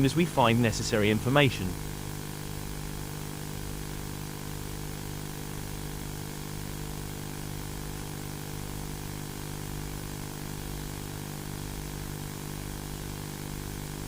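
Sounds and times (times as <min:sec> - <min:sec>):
even hiss: 0:00.0 - 0:01.8.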